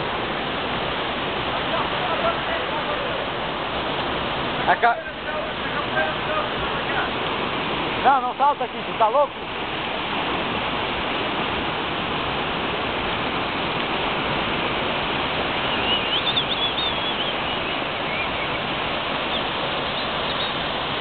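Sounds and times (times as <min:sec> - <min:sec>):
waterfall rushing: 0:00.0 - 0:21.0
bird chirping: 0:15.7 - 0:18.6, 0:19.3 - 0:20.6.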